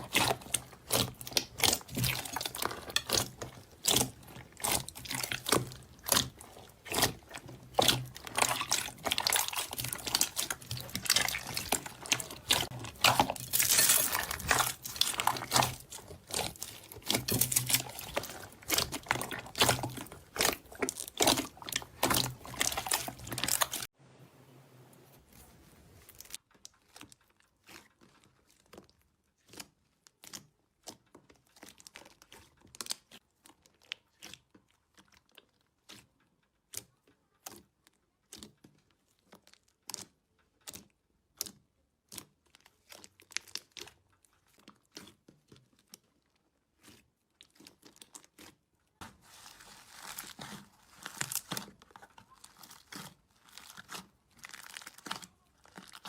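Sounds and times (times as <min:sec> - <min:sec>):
slime crackling and popping: 0:00.0 - 0:23.9, 0:49.2 - 0:56.0.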